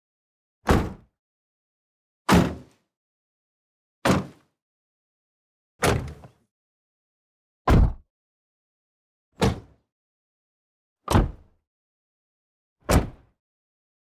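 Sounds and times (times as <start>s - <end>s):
car door shutting: 7.7s - 8.0s, 11.1s - 11.5s, 12.9s - 13.2s.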